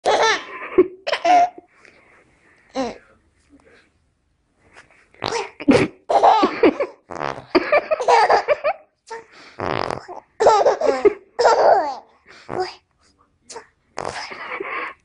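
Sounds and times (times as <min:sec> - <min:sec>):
baby blowing raspberries: 0:14.0 - 0:15.0.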